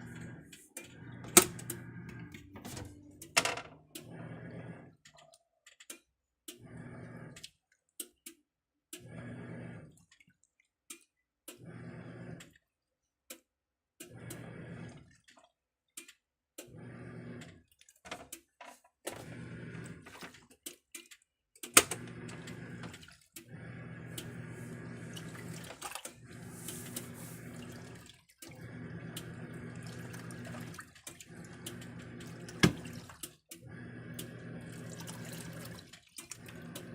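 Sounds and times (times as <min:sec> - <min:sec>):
washing machine motor running: 0:00.0 - 0:05.2, 0:06.4 - 0:07.5, 0:09.0 - 0:10.2, 0:11.5 - 0:12.6, 0:14.0 - 0:15.3, 0:16.6 - 0:18.4, 0:19.0 - 0:20.6, 0:21.7 - 0:36.9
water sloshing: 0:24.2 - 0:28.8, 0:29.6 - 0:33.4.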